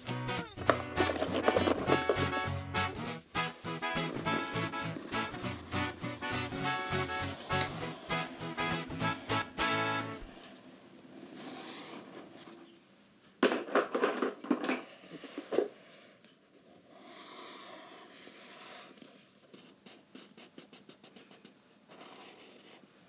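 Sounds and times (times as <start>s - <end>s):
pencil scratching on paper: 3.8s - 10.4s, 11.2s - 12.7s, 16.5s - 23.0s.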